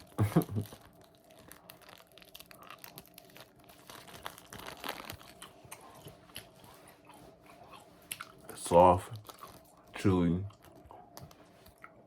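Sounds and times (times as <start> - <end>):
plastic wrapper crinkling: 0.0 - 6.9, 8.2 - 10.0.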